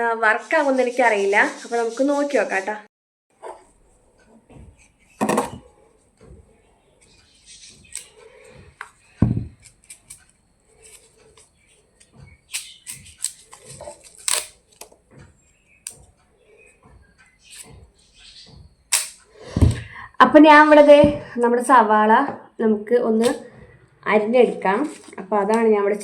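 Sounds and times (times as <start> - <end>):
kitchen clicks and knocks: 4.3 - 6.4.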